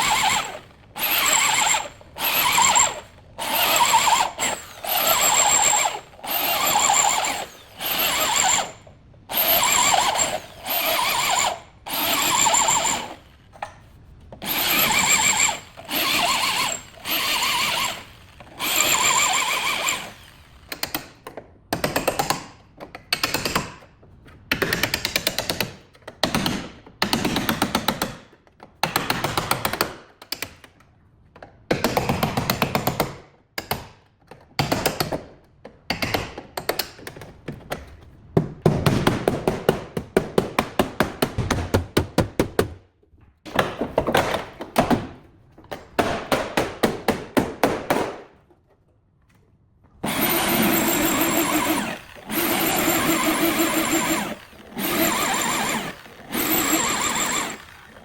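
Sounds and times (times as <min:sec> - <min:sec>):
power tool rattling bursts: 0:00.0 - 0:13.4, 0:14.4 - 0:21.0, 0:50.0 - 0:58.0
power tool whining: 0:00.0 - 0:13.4, 0:14.4 - 0:20.7, 0:50.0 - 0:58.0.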